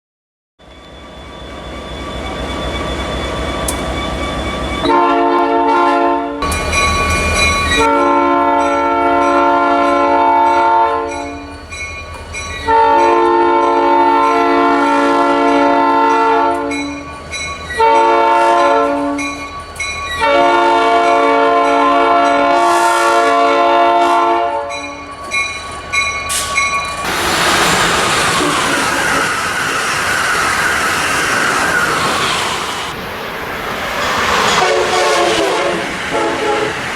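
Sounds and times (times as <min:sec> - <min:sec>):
train wheel and rail noise: 0:00.6 - 0:36.9
train rumble: 0:00.7 - 0:36.9
locomotive air horn chord: 0:04.9 - 0:06.4, 0:07.8 - 0:11.4, 0:12.7 - 0:16.8, 0:17.8 - 0:19.2, 0:20.2 - 0:24.9, 0:34.4 - 0:36.8.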